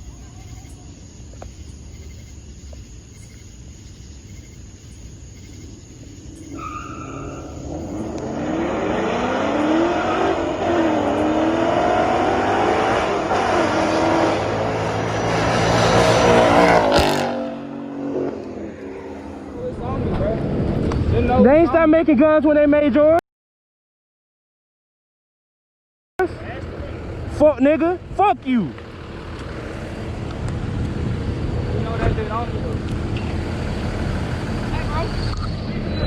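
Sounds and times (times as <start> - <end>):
vehicle engine revving: 6.1 - 21.2, 28.7 - 36.0.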